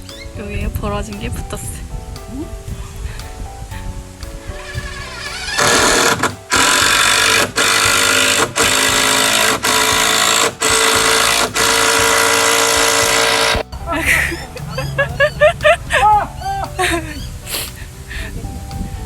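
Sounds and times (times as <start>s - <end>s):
power tool buzzing in bursts: 4.6s - 13.6s.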